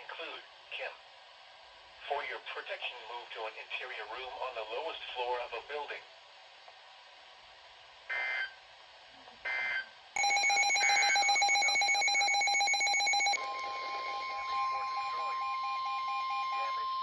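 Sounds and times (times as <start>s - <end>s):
rapidly pulsing alarm beep: 9.5s - 17.0s
steady warning alarm tone: 9.5s - 17.0s
data-burst tones: 10.2s - 17.0s.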